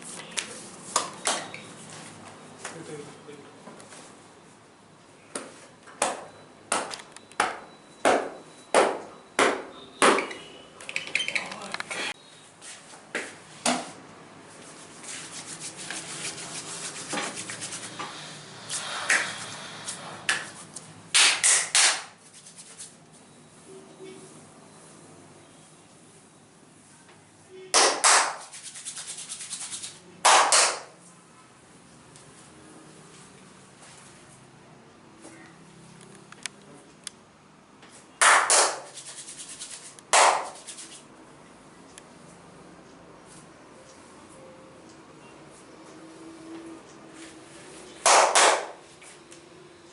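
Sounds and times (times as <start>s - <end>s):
hands rubbing skin: 14.6s - 18.0s, 28.2s - 30.0s, 38.6s - 41.0s
hands slapping bare back: 21.1s - 22.2s, 27.8s - 28.5s, 30.3s - 30.9s, 38.2s - 39.0s, 40.1s - 40.7s, 48.1s - 48.8s.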